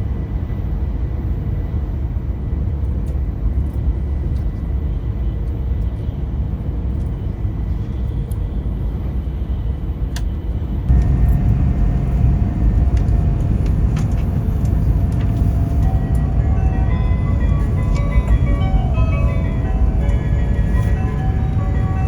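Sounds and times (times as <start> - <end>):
short tune: 10.9 - 22.0
train cabin rumble: 10.9 - 22.0.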